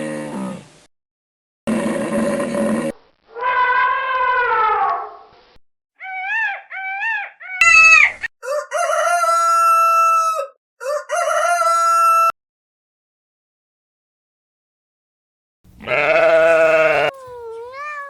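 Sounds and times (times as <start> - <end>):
rooster crowing: 7.6 - 12.4.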